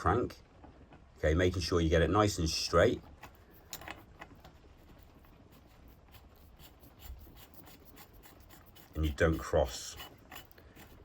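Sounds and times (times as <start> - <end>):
tool threading into metal scraping: 6.0 - 11.0.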